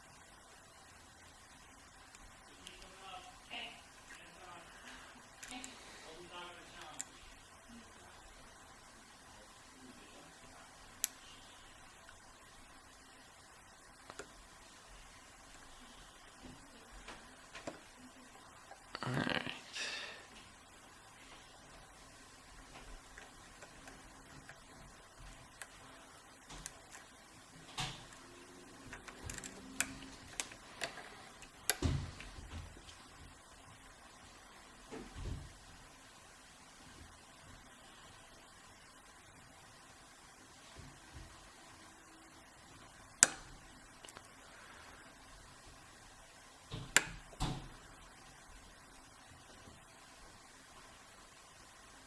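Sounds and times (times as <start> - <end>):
lock-picking tools clicking: 28.9 - 31.9, 43.2 - 44.3
lock pick clicking in padlock: 29.0 - 30.9.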